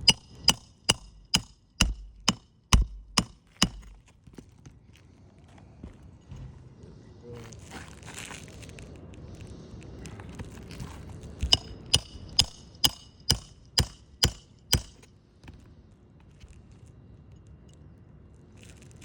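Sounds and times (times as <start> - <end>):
hammer striking nail: 0.0 - 4.0, 11.4 - 15.1.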